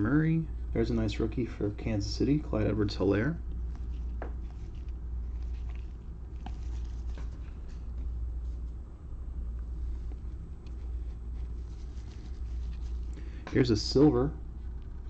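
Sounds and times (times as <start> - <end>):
steady low hum: 0.0 - 15.0
trading cards rustling and clicking: 3.6 - 8.7, 9.6 - 13.8.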